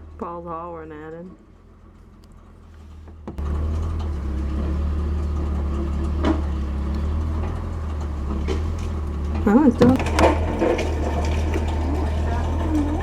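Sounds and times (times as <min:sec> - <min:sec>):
low engine drone: 0:00.0 - 0:13.0.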